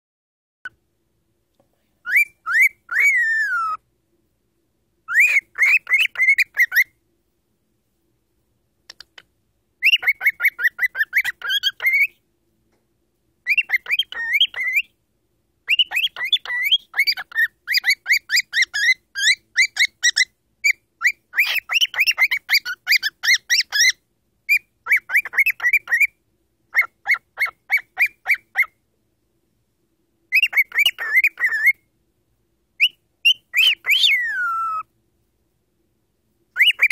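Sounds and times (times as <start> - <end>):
cockatiel chirping: 2.0 - 3.8, 5.1 - 7.0, 8.9 - 12.2, 13.4 - 15.0, 15.6 - 28.8, 30.3 - 31.8, 32.8 - 34.9, 36.6 - 36.9
falling bird whistle: 2.1 - 3.8, 5.1 - 6.9, 32.8 - 34.9.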